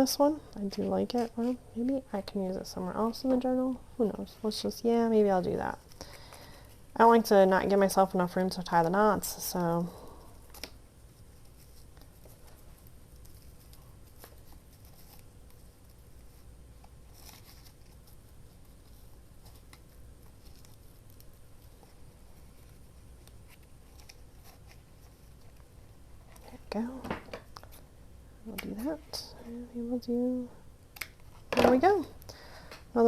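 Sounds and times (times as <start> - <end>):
faint steady hum: 0.0 - 33.0
paper tag and ribbon rustling: 7.0 - 27.8.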